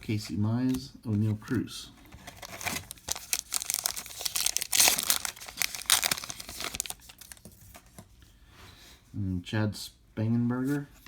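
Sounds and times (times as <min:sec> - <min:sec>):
wrapper tearing and crinkling: 0:02.4 - 0:07.5.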